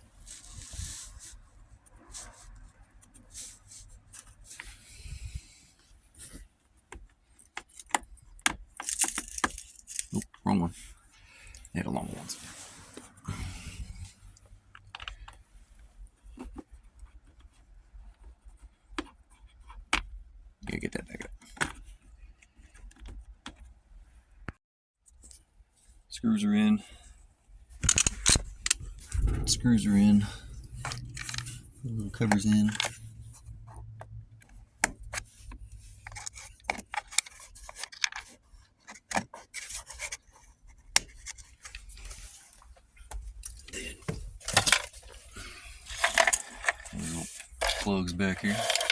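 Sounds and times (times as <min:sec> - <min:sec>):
hands handling screws and plastic trim: 0:07.0 - 0:10.3, 0:27.8 - 0:29.5, 0:30.5 - 0:33.5, 0:34.4 - 0:40.2, 0:44.2 - 0:48.9
clicks and scraping of plastic trim: 0:45.8 - 0:48.9.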